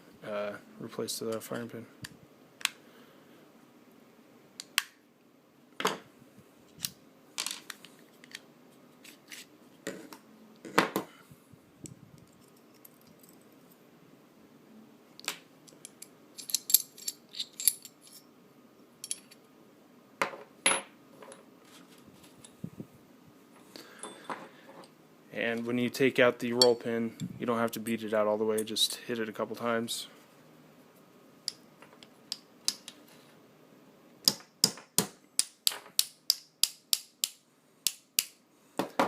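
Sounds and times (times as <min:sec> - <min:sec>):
pistol parts clicking and knocking: 0:15.2 - 0:18.0, 0:31.4 - 0:33.0, 0:34.2 - 0:39.0.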